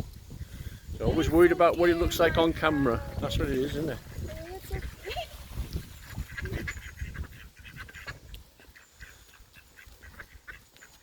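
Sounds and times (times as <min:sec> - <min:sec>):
low wind rumble: 0:00.0 - 0:08.5
ducks quacking: 0:01.0 - 0:11.0.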